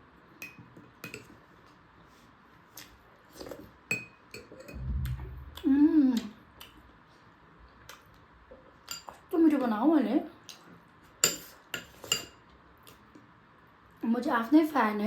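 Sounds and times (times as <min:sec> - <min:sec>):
utensils clinking against a dish: 0:00.4 - 0:01.4, 0:08.8 - 0:09.2, 0:11.2 - 0:12.4
low rumble of handling: 0:04.7 - 0:06.0
person humming mmm: 0:04.8 - 0:06.4.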